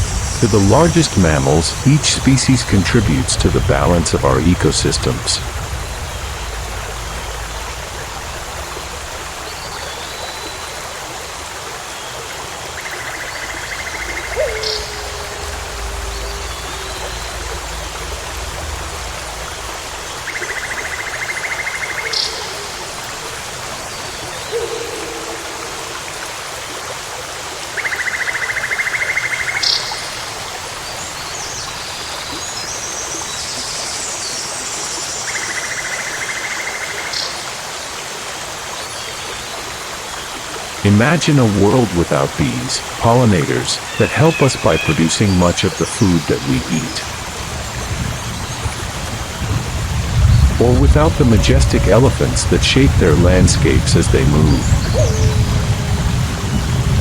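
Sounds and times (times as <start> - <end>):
steady hiss: 0.0 - 27.2, 28.7 - 57.0
low hoot-like call: 13.5 - 19.5, 50.8 - 56.7.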